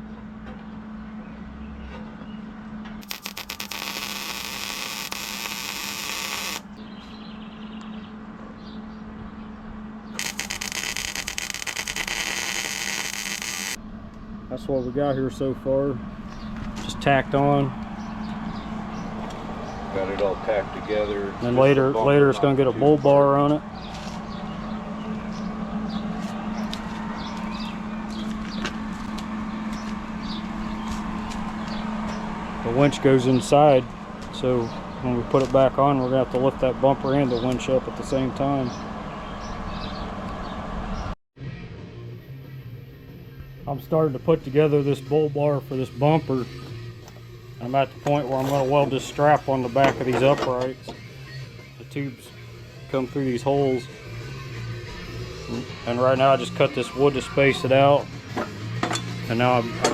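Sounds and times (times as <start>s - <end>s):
low mechanical hum: 0.0s - 59.9s
arc welding crackling: 3.0s - 6.8s, 10.2s - 13.8s
steady hum: 3.0s - 6.8s, 9.9s - 16.3s.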